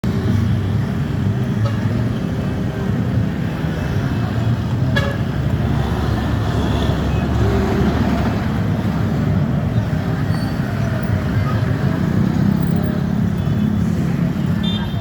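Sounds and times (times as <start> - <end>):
traffic rumble: 0.0 - 15.0.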